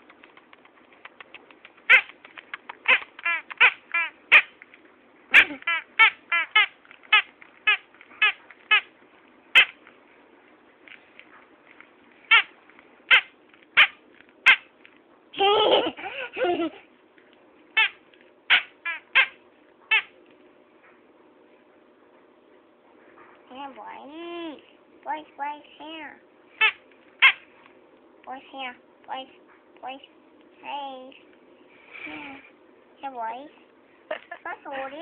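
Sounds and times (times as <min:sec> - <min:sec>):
rubber squeaky toy squeaking: 0:01.8 - 0:04.6, 0:05.3 - 0:08.9, 0:09.5 - 0:09.8, 0:12.3 - 0:12.5, 0:13.1 - 0:14.7, 0:17.8 - 0:20.1, 0:26.6 - 0:27.4.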